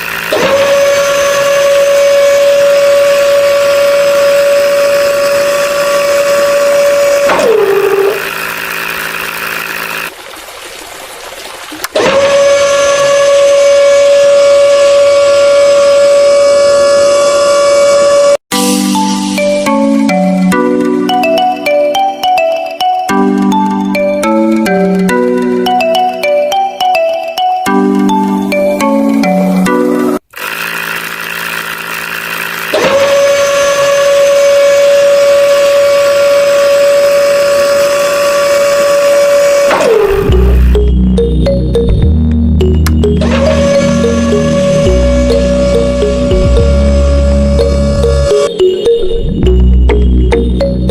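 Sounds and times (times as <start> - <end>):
small electric motor whining: 0.0 - 10.1, 12.0 - 18.4, 30.3 - 40.8, 43.2 - 48.5
siren-like steady tone: 0.4 - 8.4, 12.0 - 18.4, 32.8 - 50.9.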